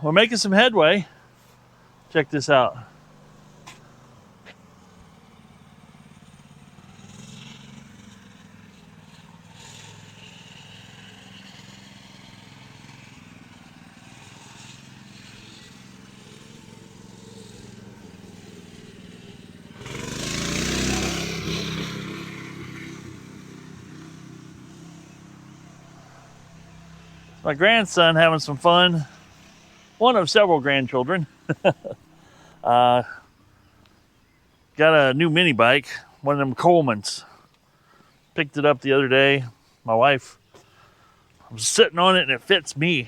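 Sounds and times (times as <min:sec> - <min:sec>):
engine running: 0:00.0 - 0:34.0.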